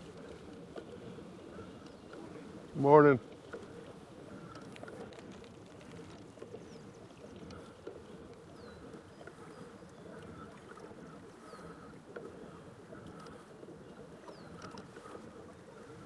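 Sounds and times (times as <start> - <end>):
light clicks: 14.2 - 15.2.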